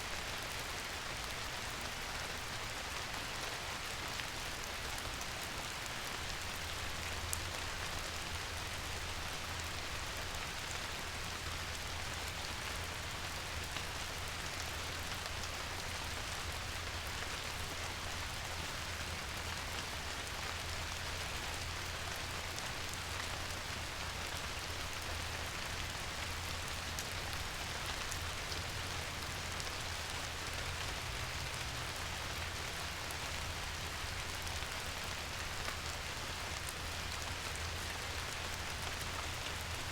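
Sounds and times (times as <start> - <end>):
rain hissing on a surface: 0.0 - 39.9.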